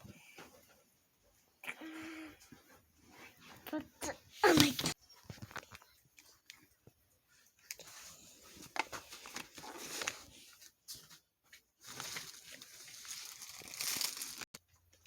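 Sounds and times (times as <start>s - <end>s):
plastic wrapping crinkling: 11.8s - 14.6s.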